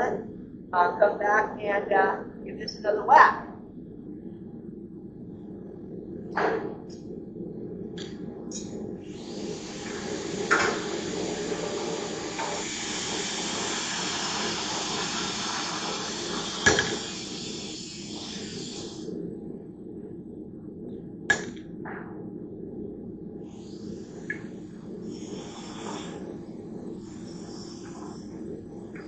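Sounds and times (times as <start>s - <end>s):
steady hiss: 5.3s - 20.0s, 23.2s - 29.0s.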